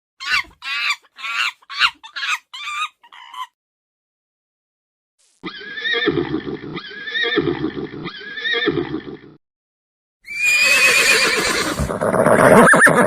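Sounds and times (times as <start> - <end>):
horse whinnying: 5.4 - 9.3, 10.3 - 13.0.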